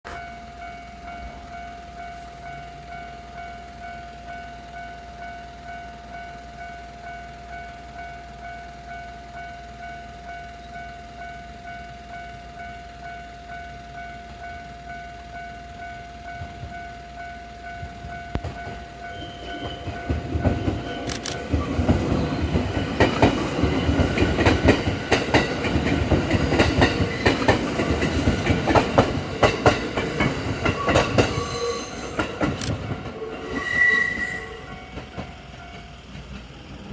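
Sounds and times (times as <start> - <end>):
electric train passing: 0.1 - 36.9
train wheels clattering: 17.7 - 36.9.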